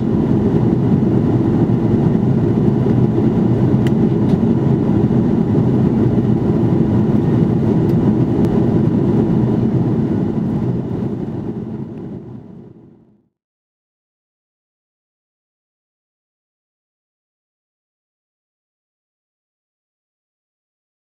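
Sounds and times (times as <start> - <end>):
airplane cabin roar: 0.0 - 13.3.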